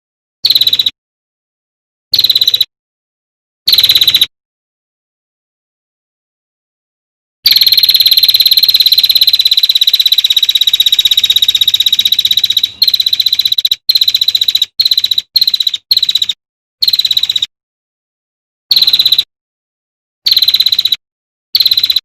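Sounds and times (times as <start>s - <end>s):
songbird rapid trill: 0.4s - 1.0s, 2.2s - 2.7s, 7.5s - 17.5s, 18.7s - 19.3s, 20.3s - 21.0s, 21.6s - 22.0s.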